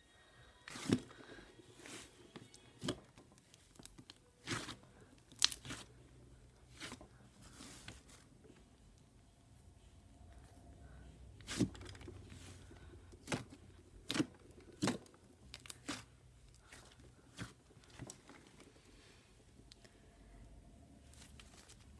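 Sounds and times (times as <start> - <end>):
slime popping and crackling: 3.8 - 5.8.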